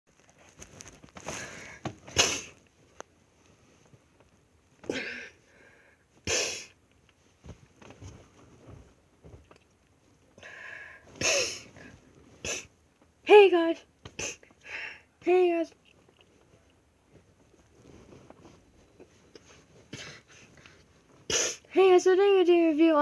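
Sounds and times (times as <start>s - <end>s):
person sniffing: 1.3s - 2.6s, 6.2s - 6.8s, 10.4s - 11.8s, 12.4s - 12.7s, 14.1s - 14.9s, 19.4s - 21.7s.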